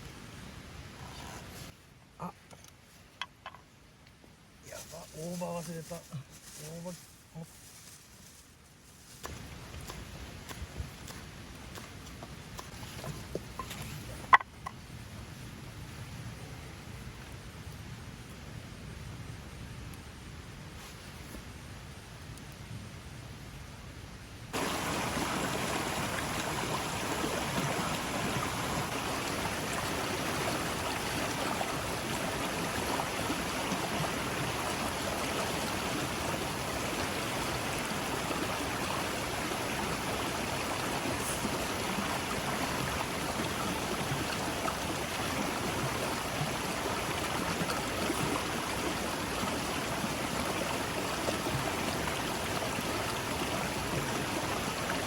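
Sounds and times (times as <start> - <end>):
running water rushing: 24.5 - 55.0.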